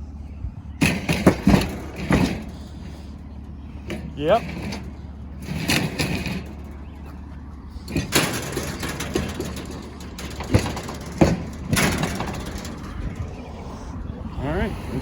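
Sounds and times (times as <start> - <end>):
vehicle engine idling: 0.0 - 15.0
sharp metal knocks: 0.8 - 3.0, 3.8 - 7.2, 7.8 - 13.4
metal cabinet scraping and clattering: 0.8 - 14.0.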